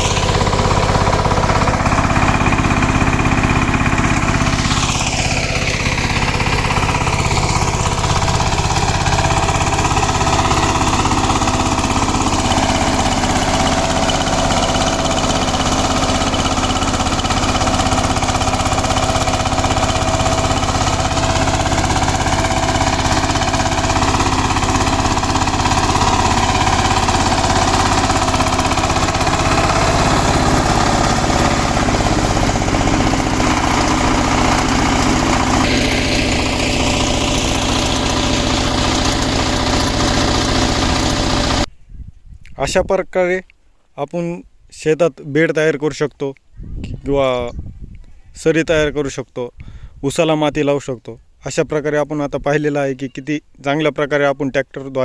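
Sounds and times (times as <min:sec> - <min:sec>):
diesel tiller engine running: 0:00.0 - 0:41.7.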